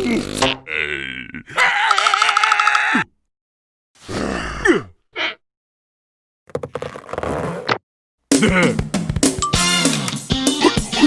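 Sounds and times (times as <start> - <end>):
wavering groan-like cartoon voice: 0.0 - 3.1.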